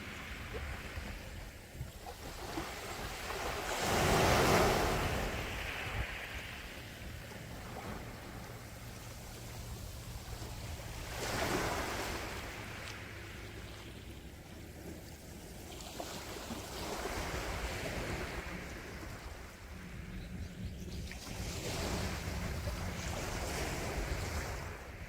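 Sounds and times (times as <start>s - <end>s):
sea waves washing onto shore: 0.0s - 19.8s.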